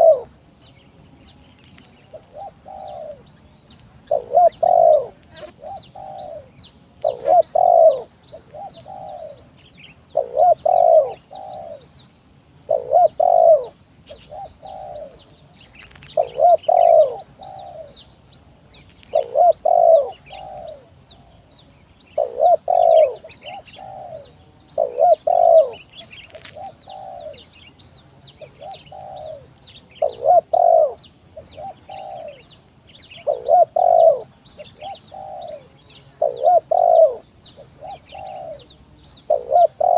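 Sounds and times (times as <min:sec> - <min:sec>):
dove cooing: 0:00.0 - 0:00.4, 0:02.0 - 0:03.4, 0:04.0 - 0:12.0, 0:12.6 - 0:18.1, 0:19.0 - 0:21.5, 0:22.1 - 0:27.6, 0:28.3 - 0:39.9.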